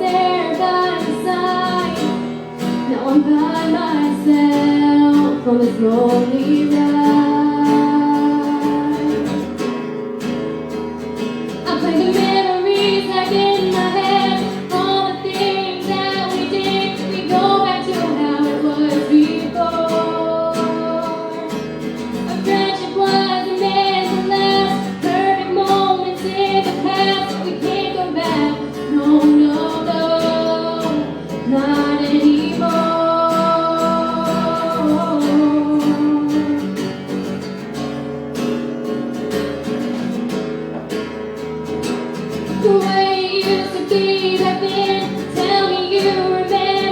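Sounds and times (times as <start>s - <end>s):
woman singing: 0.0s - 9.6s, 11.6s - 37.4s, 42.4s - 46.9s
acoustic guitar: 0.0s - 46.9s.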